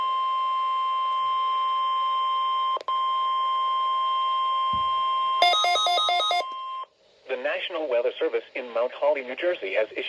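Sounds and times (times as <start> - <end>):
steady warning alarm tone: 4.6 - 6.5.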